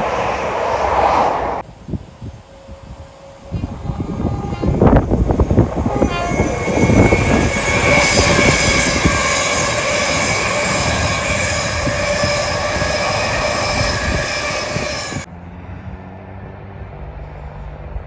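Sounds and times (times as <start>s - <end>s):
train rail noise: 0.0s - 16.0s
sustained tones: 2.4s - 15.3s.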